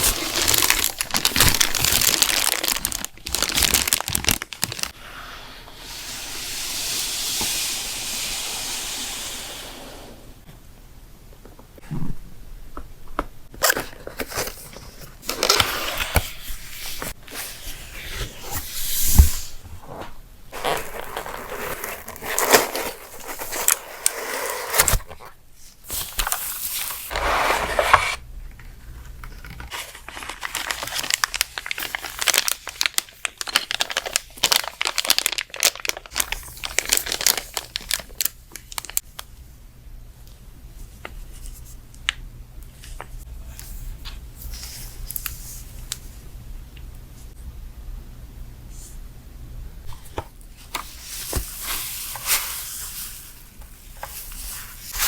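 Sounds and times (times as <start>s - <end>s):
packaging tearing and crinkling: 0.0s - 4.9s, 20.5s - 25.3s, 29.2s - 39.0s.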